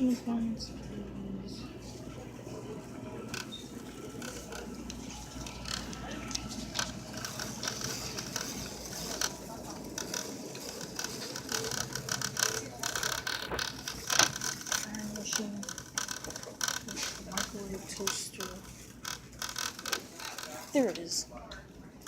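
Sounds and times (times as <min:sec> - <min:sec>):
steady low hum: 0:00.0 - 0:22.0
mechanical clicking and rattling: 0:06.7 - 0:20.7.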